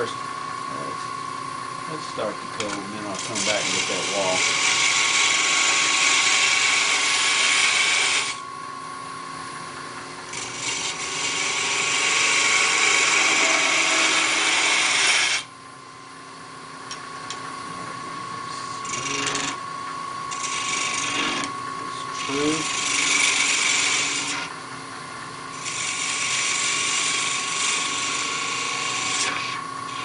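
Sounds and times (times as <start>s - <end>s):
tool hissing on spinning wood: 1.9s - 8.5s, 10.3s - 15.5s, 18.4s - 19.6s, 20.3s - 24.6s, 25.5s - 30.0s
wood lathe motor whine: 1.9s - 8.8s, 9.5s - 15.5s, 17.7s - 30.0s.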